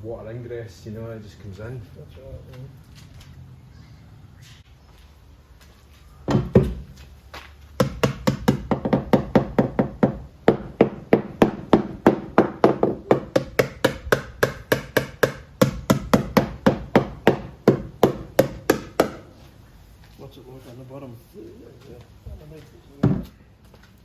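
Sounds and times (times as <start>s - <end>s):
hammer blows with woody ring: 7.8s - 19.3s.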